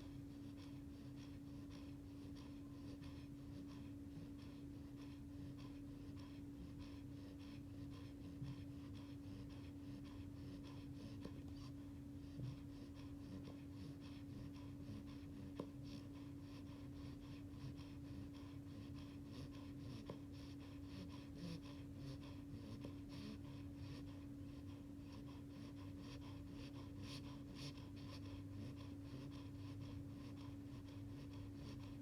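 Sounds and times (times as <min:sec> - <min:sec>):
puppy snoring softly: 0:00.0 - 0:32.0
steady low hum: 0:00.0 - 0:32.0.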